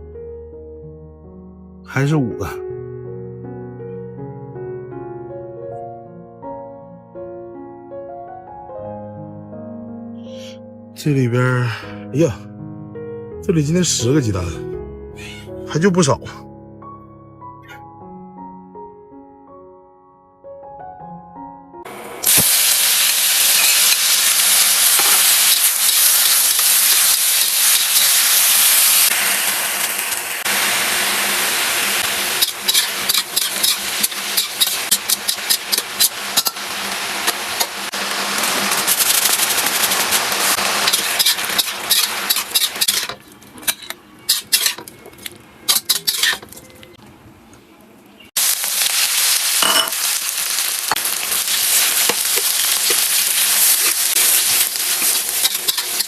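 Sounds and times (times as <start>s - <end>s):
food sizzling in hot oil: 21.9s - 44.9s, 45.7s - 46.6s, 48.4s - 56.0s
stirring in a pan: 32.3s - 36.7s, 38.4s - 46.8s, 51.3s - 56.0s.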